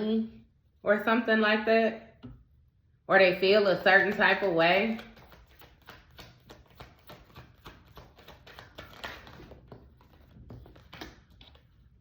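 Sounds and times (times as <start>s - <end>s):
cards tapping and clicking: 4.0s - 11.7s.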